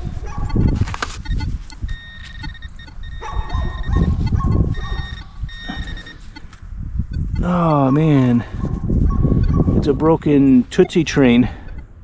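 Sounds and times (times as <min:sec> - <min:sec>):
metal detector high tone: 0:00.4 - 0:06.6, 0:07.2 - 0:08.5
metal detector lower tones: 0:00.5 - 0:08.2.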